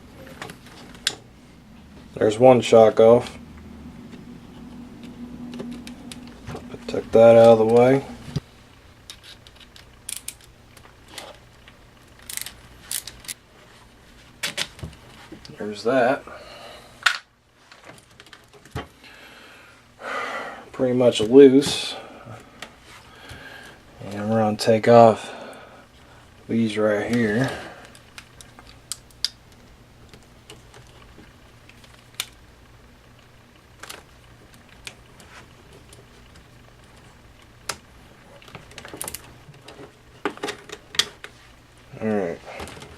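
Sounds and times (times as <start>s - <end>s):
faint low hum: 0.0s - 42.9s
small tools and parts clicking: 9.0s - 13.4s, 38.4s - 41.2s.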